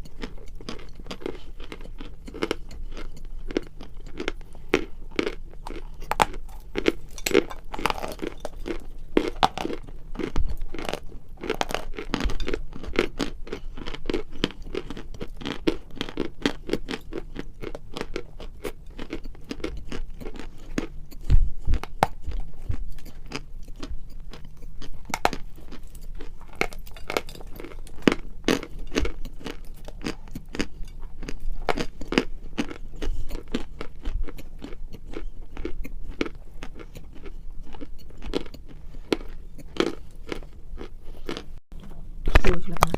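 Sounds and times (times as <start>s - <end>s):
crunchy chewing: 0.0s - 41.6s.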